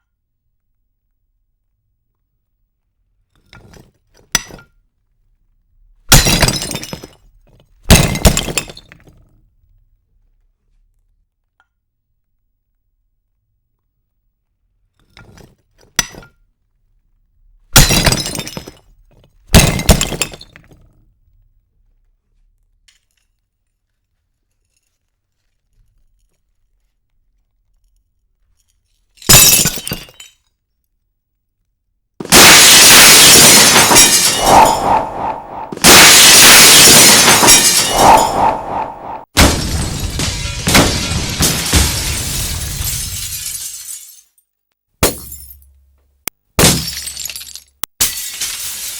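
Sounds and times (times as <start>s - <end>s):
glass smashing: 6.1s - 7.2s, 17.8s - 18.8s, 29.3s - 30.4s, 32.2s - 44.4s, 45.0s - 45.7s, 46.6s - 48.9s.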